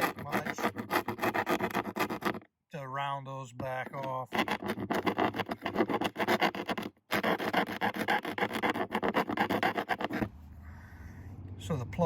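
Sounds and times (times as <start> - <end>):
file rasping on metal: 0.0 - 2.4, 4.0 - 10.3.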